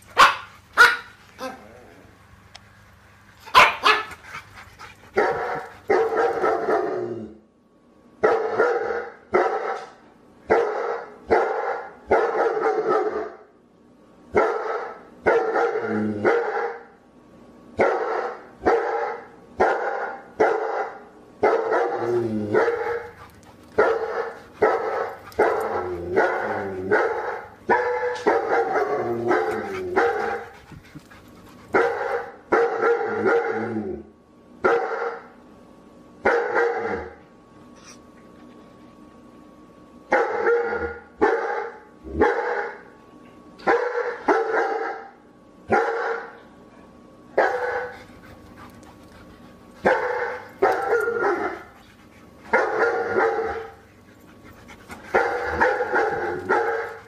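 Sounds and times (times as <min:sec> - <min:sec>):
dog barking: 0:00.2 - 0:01.2, 0:03.5 - 0:04.1, 0:08.2 - 0:09.9, 0:10.5 - 0:13.4, 0:14.4 - 0:16.9, 0:17.8 - 0:23.2, 0:23.8 - 0:30.5, 0:31.8 - 0:33.6, 0:34.6 - 0:35.3, 0:36.3 - 0:37.2, 0:40.1 - 0:42.8, 0:43.6 - 0:45.1, 0:45.7 - 0:46.4, 0:47.4 - 0:48.0, 0:49.8 - 0:51.7, 0:52.5 - 0:53.8, 0:55.1 - 0:57.0.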